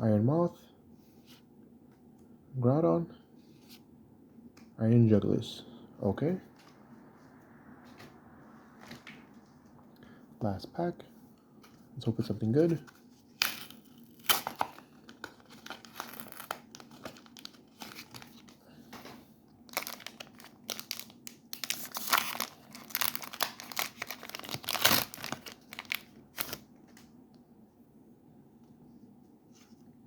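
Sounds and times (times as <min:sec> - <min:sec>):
foil wrapper crinkling and tearing: 0:13.3 - 0:18.5, 0:19.7 - 0:26.6.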